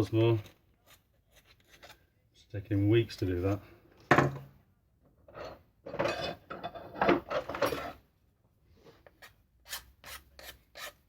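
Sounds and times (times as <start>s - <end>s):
hand tool scraping plastic pipe: 0.0s - 2.0s, 8.9s - 11.0s.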